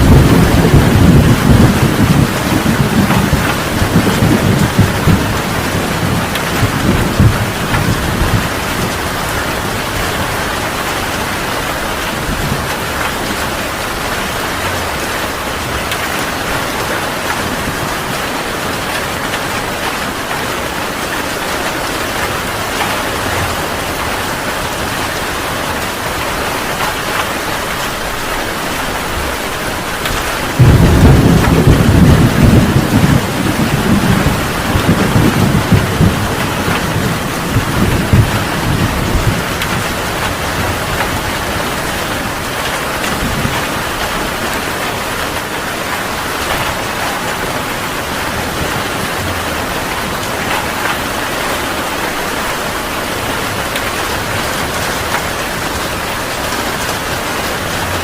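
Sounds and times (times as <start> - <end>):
heavy rain pouring: 0.0 - 58.0
thunder rumble: 0.0 - 58.0
loud thunder crash: 30.5 - 39.5.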